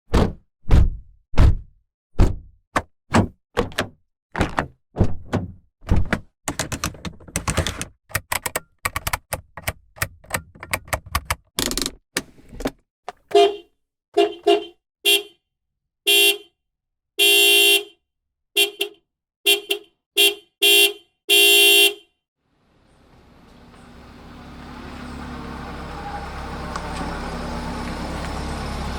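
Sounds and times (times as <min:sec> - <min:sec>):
sharp knocks and clicks: 0:02.2 - 0:12.1
car horn honking: 0:13.3 - 0:15.4, 0:16.1 - 0:16.5, 0:17.2 - 0:18.0, 0:18.6 - 0:22.0, 0:25.8 - 0:27.5.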